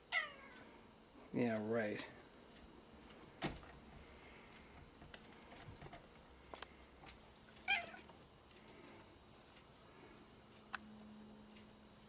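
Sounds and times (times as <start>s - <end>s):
cat meowing: 0.1s - 0.6s, 7.6s - 8.1s.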